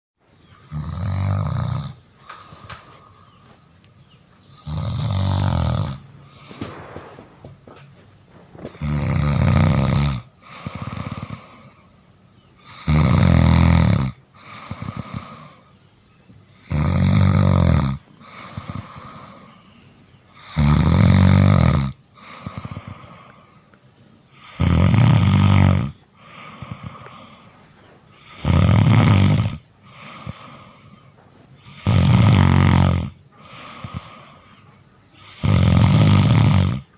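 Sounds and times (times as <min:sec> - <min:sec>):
cat snoring: 0:00.6 - 0:02.7, 0:04.5 - 0:06.5, 0:08.7 - 0:11.9, 0:12.6 - 0:15.6, 0:16.6 - 0:19.6, 0:20.4 - 0:23.4, 0:24.4 - 0:27.5, 0:28.2 - 0:30.9, 0:31.6 - 0:34.5, 0:35.2 - 0:36.9
soft rasping breath: 0:02.0 - 0:04.5, 0:18.1 - 0:20.1, 0:22.1 - 0:23.8, 0:26.1 - 0:28.5, 0:29.7 - 0:31.8, 0:33.3 - 0:35.4.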